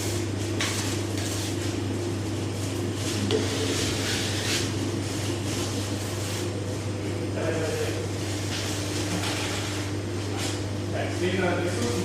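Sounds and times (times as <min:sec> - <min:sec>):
low machine hum: 0:00.0 - 0:12.0
panels rustling and scraping: 0:08.3 - 0:10.7.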